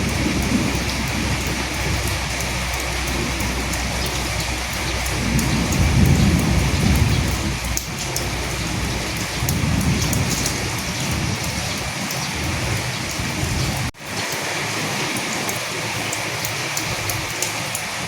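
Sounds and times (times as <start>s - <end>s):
low rumble: 0.0s - 13.9s
raindrops ticking: 0.0s - 18.0s
steady rain: 0.0s - 18.0s.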